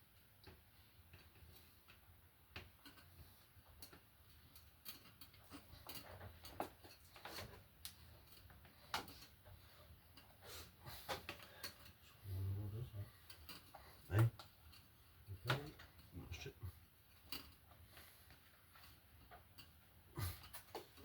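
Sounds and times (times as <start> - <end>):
faint clicks and taps: 0.2 - 10.4.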